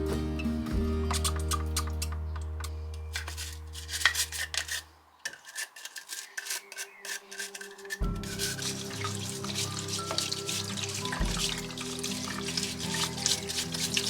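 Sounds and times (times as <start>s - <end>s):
background music: 0.0s - 4.8s, 7.3s - 14.0s
hand scrubbing and scraping: 3.0s - 14.0s.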